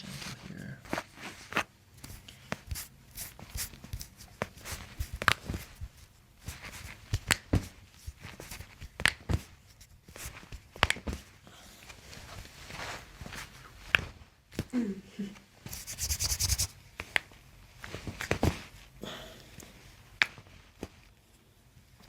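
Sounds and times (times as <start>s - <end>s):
hands rustling on foot: 0.8s - 11.3s, 15.6s - 17.2s.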